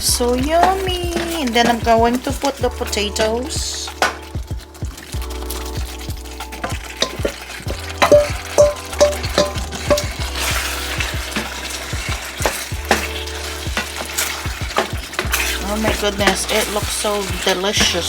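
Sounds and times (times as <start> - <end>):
sauce sizzling: 0.1 - 18.0
spoon stirring and knocking pan: 3.9 - 18.0
ringing metal taps: 8.0 - 10.2.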